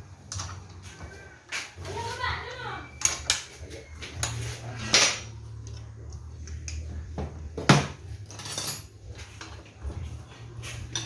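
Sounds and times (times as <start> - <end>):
metal tools clinking: 2.9 - 6.8, 8.1 - 11.0.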